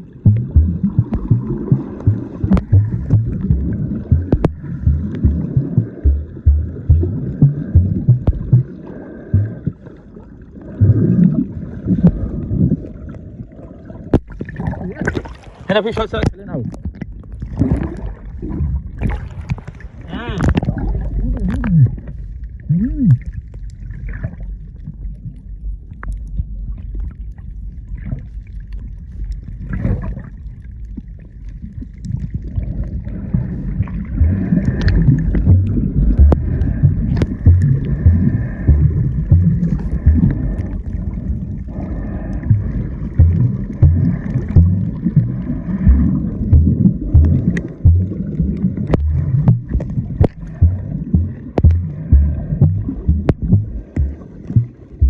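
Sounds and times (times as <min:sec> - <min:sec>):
low thuds: 0:00.0 - 0:09.8, 0:10.8 - 0:11.2, 0:34.0 - 0:40.8, 0:42.4 - 0:55.0
muffled underwater rumble and gurgling: 0:00.0 - 0:55.0.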